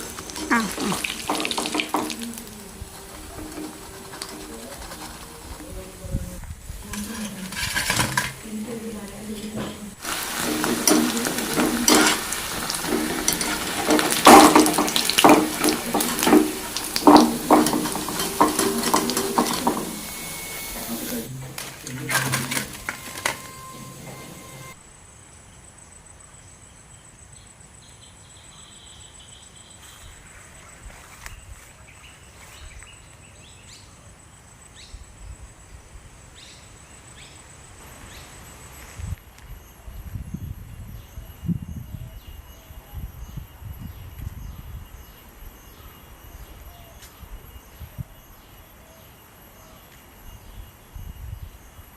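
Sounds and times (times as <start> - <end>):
food frying in hot oil: 0.0 - 5.6, 10.0 - 24.7
metal utensil clinking on pan: 0.3 - 2.6, 10.0 - 20.8.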